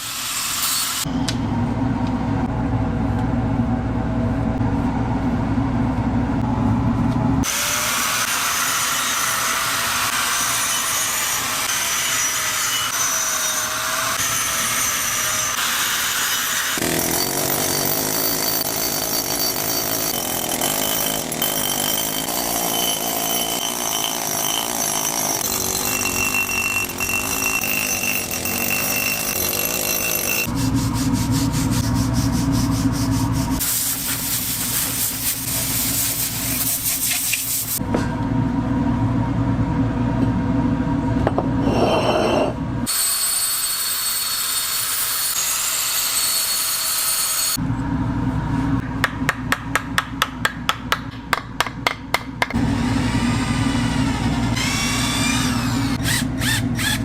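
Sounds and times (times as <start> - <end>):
low-pitched motor hum: 1.1 - 7.4.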